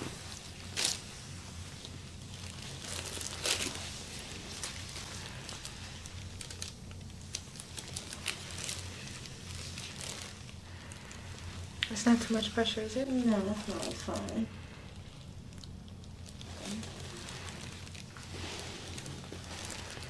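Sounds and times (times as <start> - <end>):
low steady hum: 0.0 - 20.0
hands rubbing during massage: 16.5 - 20.0.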